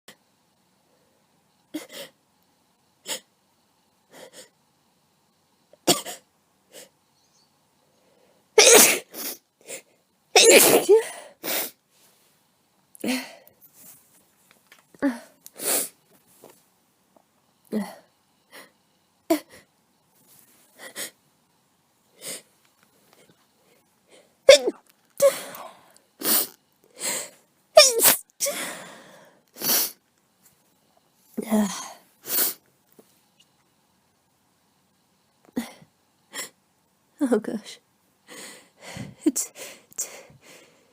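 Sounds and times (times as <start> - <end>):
person sneezing: 8.6 - 9.4, 10.4 - 11.8, 24.5 - 26.6, 27.8 - 28.8.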